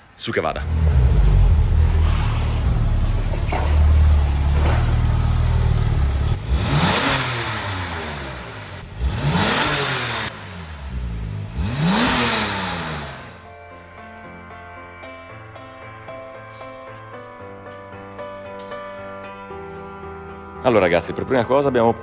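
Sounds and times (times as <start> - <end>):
car engine rumbling and revving: 0.5 - 13.4
background music: 13.4 - 22.0.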